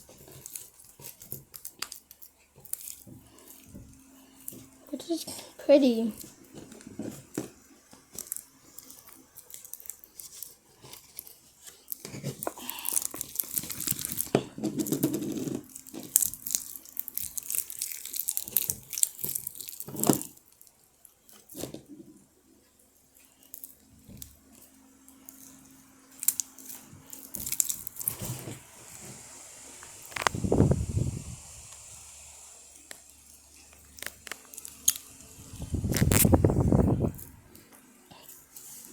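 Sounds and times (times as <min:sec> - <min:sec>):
slime crackling and snapping: 0:00.3 - 0:03.7, 0:08.1 - 0:20.7, 0:26.1 - 0:28.3, 0:33.8 - 0:35.1, 0:35.8 - 0:36.4.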